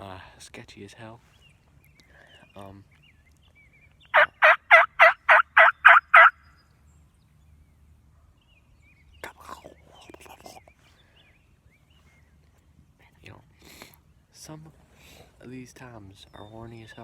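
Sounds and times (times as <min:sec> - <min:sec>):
turkey yelps: 0:04.1 - 0:06.4.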